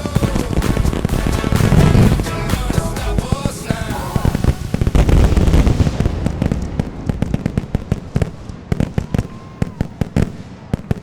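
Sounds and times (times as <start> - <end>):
fireworks booming and crackling: 0.0 - 11.0.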